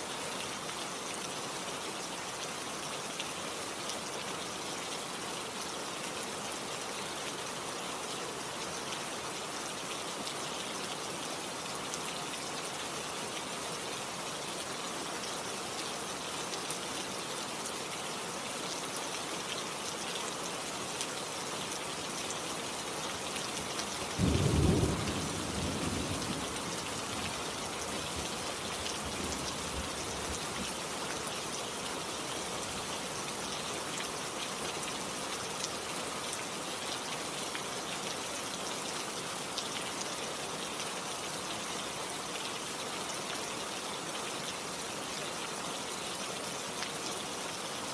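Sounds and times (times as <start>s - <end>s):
steady rain falling: 0.0s - 47.9s
low rumble of thunder: 24.2s - 29.9s.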